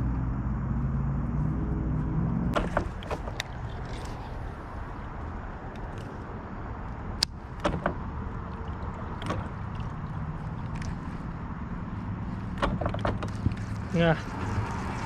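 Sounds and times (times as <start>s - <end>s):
water noise: 0.0s - 15.0s
fishing tackle clicks: 5.7s - 6.2s, 10.5s - 11.0s.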